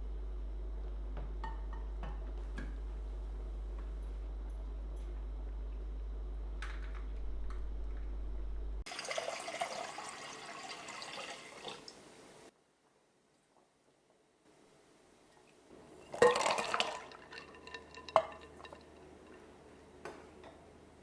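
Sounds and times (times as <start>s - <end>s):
low hum: 2.8s - 8.8s
water running: 8.9s - 12.5s, 15.4s - 21.0s.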